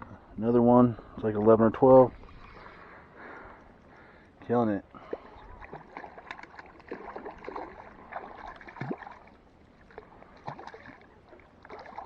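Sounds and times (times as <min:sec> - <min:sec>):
water splashing and lapping: 0:05.0 - 0:12.0.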